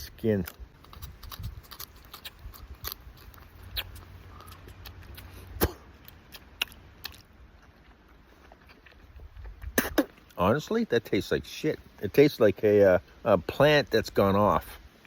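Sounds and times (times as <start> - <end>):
chewing crunches and clicks: 0.3 - 10.4.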